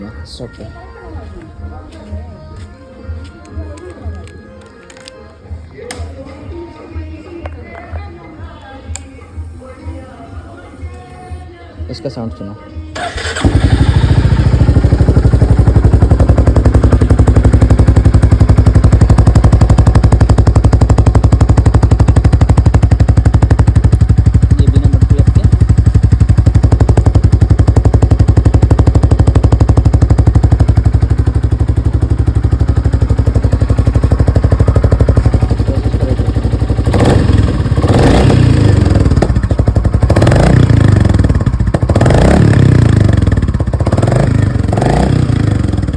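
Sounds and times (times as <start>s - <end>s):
motorcycle engine idling: 13.0s - 45.9s
motorcycle engine revving: 13.0s - 45.9s.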